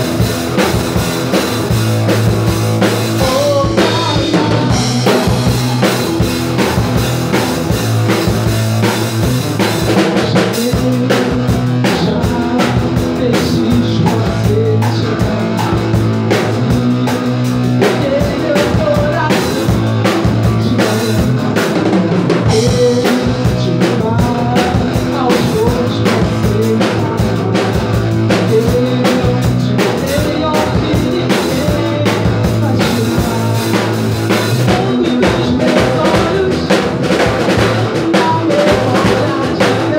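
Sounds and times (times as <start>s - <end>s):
drum kit beat: 0.0s - 39.9s
electric guitar lines: 0.0s - 39.9s
low bass notes: 0.0s - 39.9s.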